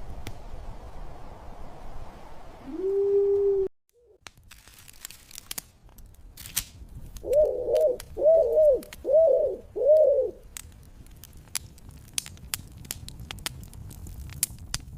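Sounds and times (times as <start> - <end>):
bird cooing: 2.6 - 4.2, 7.2 - 10.4.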